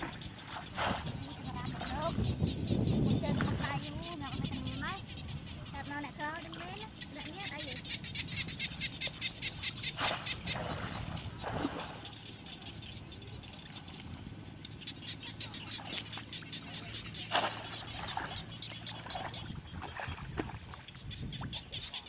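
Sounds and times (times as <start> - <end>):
frogs calling in pulsed trill: 6.9 - 10.6
sharp knocks or splashes: 17.2 - 20.8.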